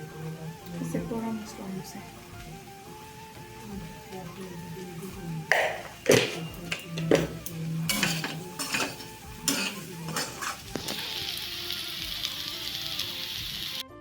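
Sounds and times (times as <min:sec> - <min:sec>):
pan sizzling: 0:00.0 - 0:14.0
metal spatula scraping pot: 0:07.9 - 0:11.0.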